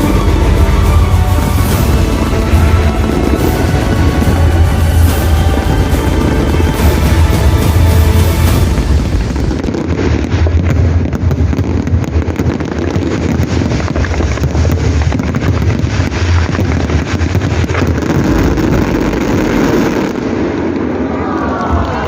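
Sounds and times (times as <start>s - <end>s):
fireworks crackling: 0.0s - 22.0s
low rumble of firework bursts: 0.0s - 22.0s.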